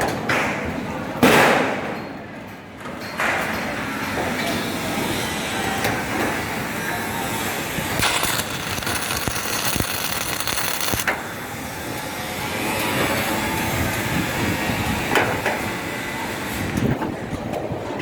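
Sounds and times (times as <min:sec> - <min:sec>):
continuous machine noise: 0:02.8 - 0:18.0
sharp welding crack: 0:08.0 - 0:11.1
welding harsh hiss: 0:08.0 - 0:11.1.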